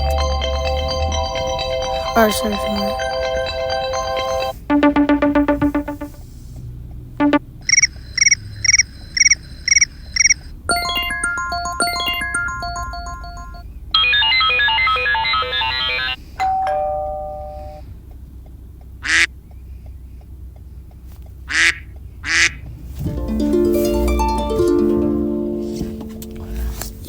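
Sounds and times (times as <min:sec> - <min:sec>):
held two-note tone: 0:00.0 - 0:06.2, 0:10.7 - 0:13.6
melodic ringtone: 0:00.0 - 0:06.2, 0:07.2 - 0:07.4, 0:10.7 - 0:16.0
fast electronic beeps: 0:04.3 - 0:06.2, 0:07.2 - 0:13.6
short sharp alert tones: 0:04.7 - 0:06.2, 0:07.2 - 0:07.4.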